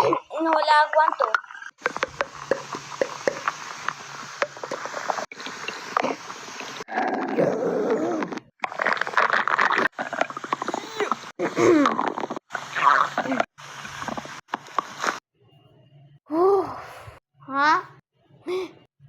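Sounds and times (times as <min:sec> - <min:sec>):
stomach growling and gurgling: 0:00.0 - 0:15.2.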